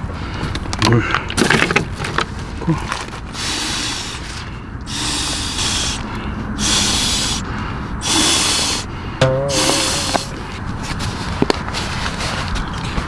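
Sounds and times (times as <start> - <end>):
person breathing hard: 4.9 - 9.0.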